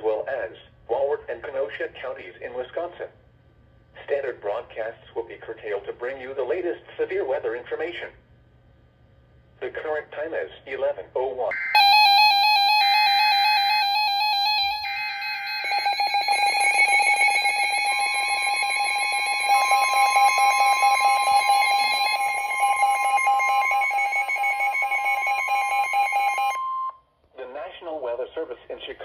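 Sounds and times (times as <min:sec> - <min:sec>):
screechy digital data bursts: 0:11.5 - 0:26.6
rapid pulsing alarm beep: 0:11.5 - 0:27.0
steady long warning alarm tone: 0:11.5 - 0:27.0.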